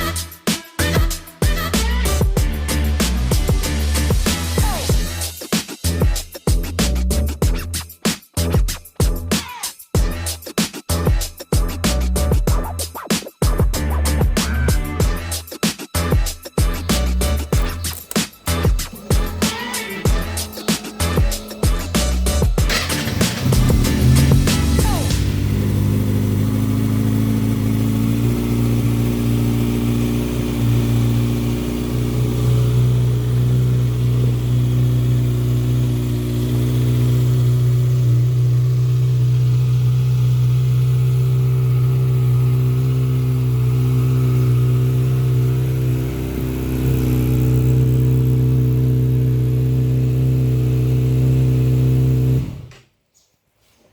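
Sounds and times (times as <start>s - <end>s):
motorcycle engine idling: 16.6s - 52.7s.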